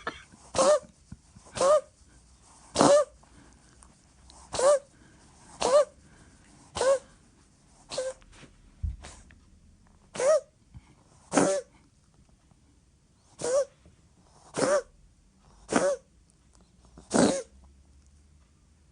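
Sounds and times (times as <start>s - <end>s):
cat sneezing: 0.0s - 2.0s, 2.7s - 3.2s, 4.4s - 4.9s, 5.5s - 6.0s, 6.7s - 7.1s, 7.8s - 8.3s, 10.1s - 10.6s, 11.3s - 11.8s, 13.3s - 13.8s, 14.4s - 15.0s, 15.7s - 16.1s, 17.0s - 17.6s.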